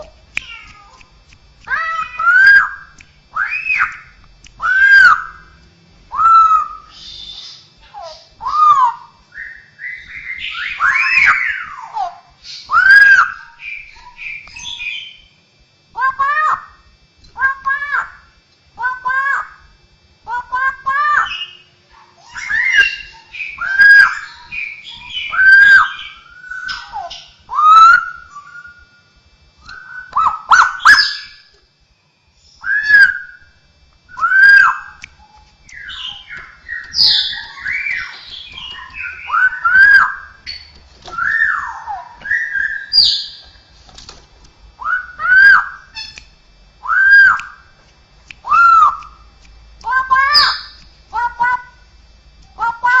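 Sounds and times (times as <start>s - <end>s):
bird singing whistled notes: 8.5s - 11.7s, 12.5s - 15.3s, 22.3s - 29.0s, 29.6s - 31.4s, 32.4s - 33.5s, 34.1s - 43.5s.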